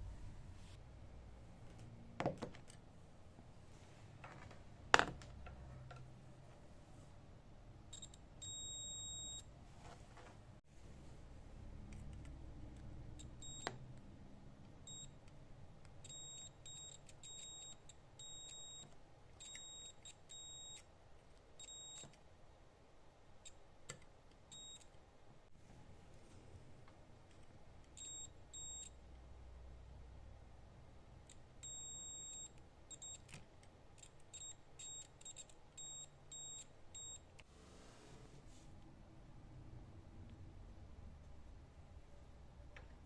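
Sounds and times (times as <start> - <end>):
multimeter beeping: 7.9 - 9.5, 13.2 - 13.8, 14.9 - 15.2, 16.0 - 20.9, 21.6 - 22.2, 24.5 - 24.9, 28.0 - 29.0, 31.6 - 33.3, 34.0 - 37.4.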